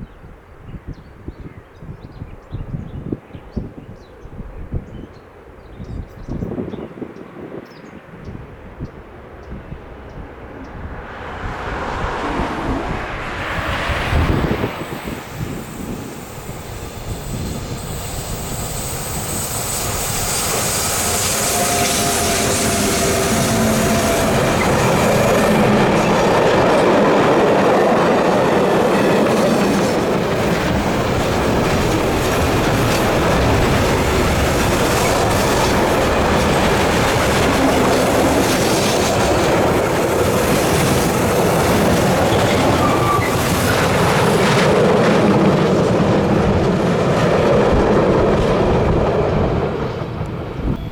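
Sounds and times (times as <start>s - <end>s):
train wheels squealing: 14.4s - 44.7s, 49.9s - 50.9s
train wheels clattering: 15.0s - 49.3s.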